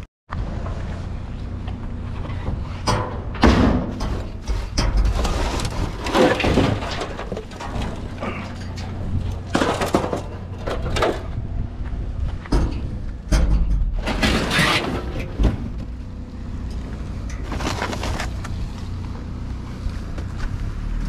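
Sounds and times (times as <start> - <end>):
steady low rumble: 0.3 - 20.7
junk scraping and rustling: 0.4 - 21.0.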